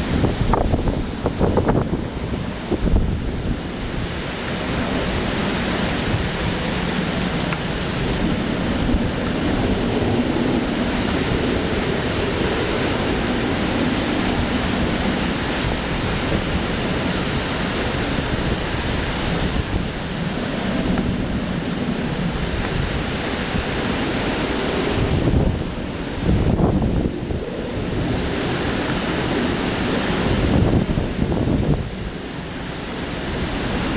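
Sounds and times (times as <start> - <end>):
storm wind and rain: 0.0 - 33.9.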